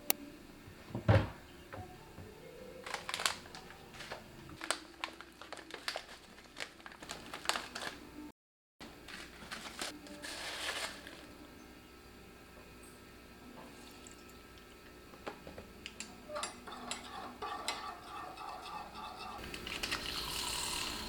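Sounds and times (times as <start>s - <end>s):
packaging crinkling: 2.8s - 8.1s, 8.8s - 11.3s.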